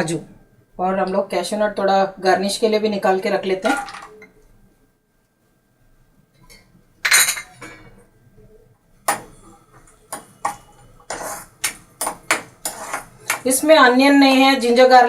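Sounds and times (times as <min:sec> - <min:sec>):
nuts frying in fat: 0:09.0 - 0:13.9
metal spoon scraping a pan: 0:09.1 - 0:13.7.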